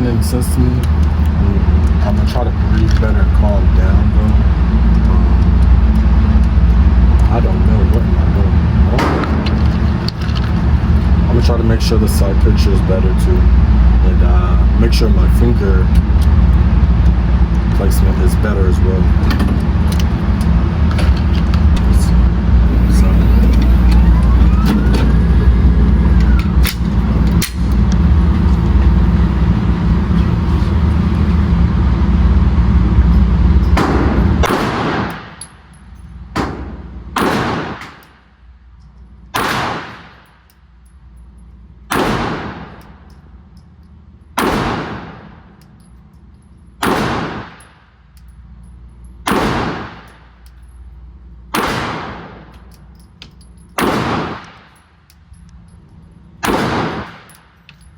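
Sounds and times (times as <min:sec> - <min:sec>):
loud low rumble: 0:00.0 - 0:35.1
pistol shots echoing: 0:33.8 - 0:35.4, 0:36.4 - 0:38.0, 0:39.4 - 0:40.2, 0:41.9 - 0:42.8, 0:44.4 - 0:45.2, 0:46.8 - 0:47.6, 0:49.3 - 0:50.1, 0:51.6 - 0:52.4, 0:53.8 - 0:54.8, 0:56.4 - 0:57.3.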